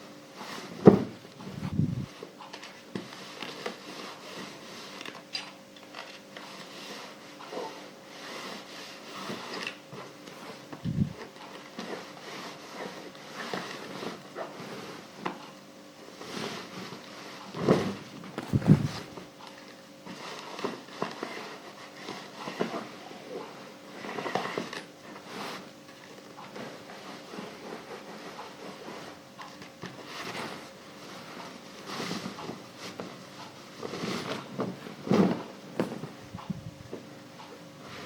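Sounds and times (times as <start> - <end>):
iron sliding over fabric: 18.4 - 19.2.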